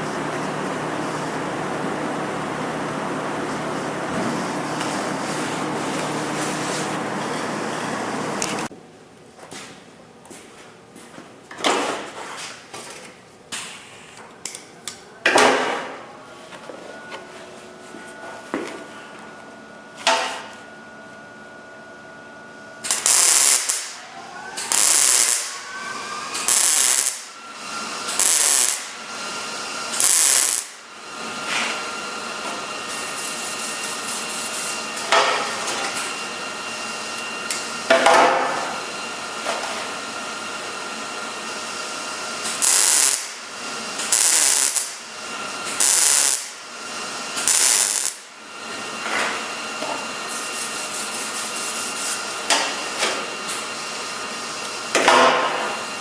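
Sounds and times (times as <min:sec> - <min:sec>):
welding crackling bursts: 0:22.8 - 0:24.0, 0:24.6 - 0:25.7, 0:26.3 - 0:27.4, 0:28.0 - 0:29.0, 0:29.9 - 0:30.9, 0:42.4 - 0:46.7, 0:47.3 - 0:48.3.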